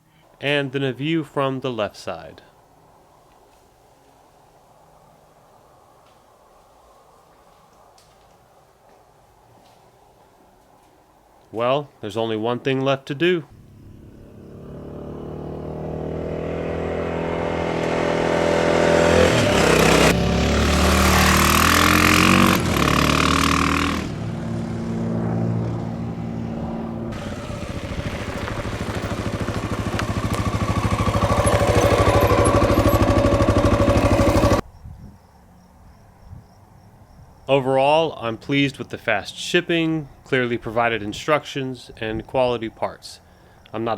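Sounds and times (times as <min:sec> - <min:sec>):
motorcycle engine accelerating: 0:13.5 - 0:34.6.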